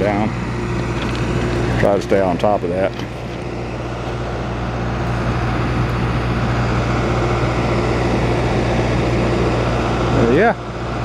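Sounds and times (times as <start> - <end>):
machine hum: 0.0 - 11.0.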